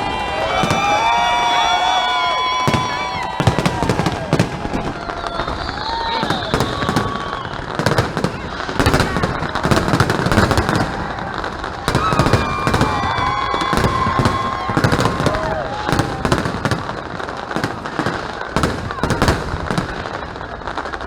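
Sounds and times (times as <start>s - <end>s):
firework whistle dropping in pitch: 0.0s - 7.7s
fireworks bangs and crackles: 0.0s - 21.0s.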